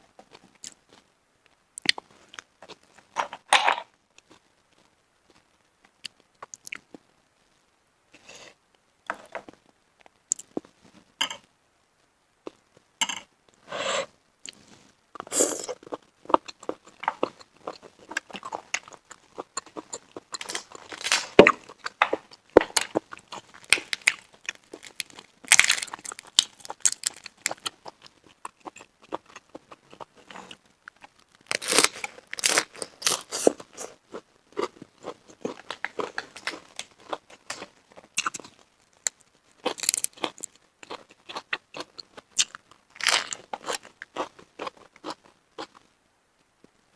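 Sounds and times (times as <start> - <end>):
person chewing shellfish: 15.2 - 45.8
crunchy clicks: 19.6 - 27.9.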